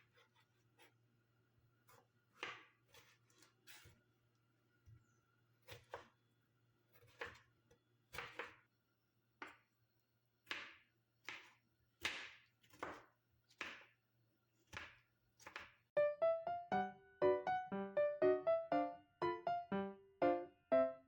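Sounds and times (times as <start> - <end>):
knife chopping on cutting board: 10.5 - 13.9
piano background music: 16.0 - 21.0.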